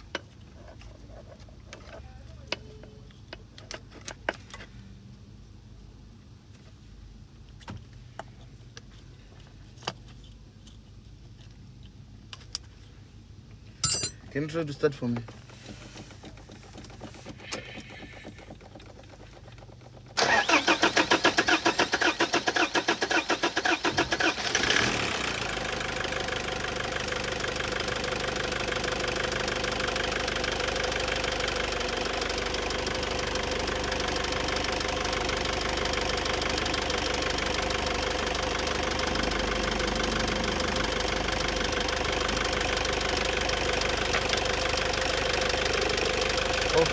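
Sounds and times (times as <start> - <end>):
engine idling: 15.7 - 46.9
engine starter cranking: 20.2 - 25.5.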